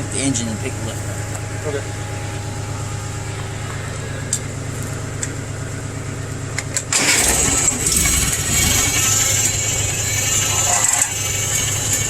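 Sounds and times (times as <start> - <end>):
tractor engine starting and running: 0.0 - 12.0.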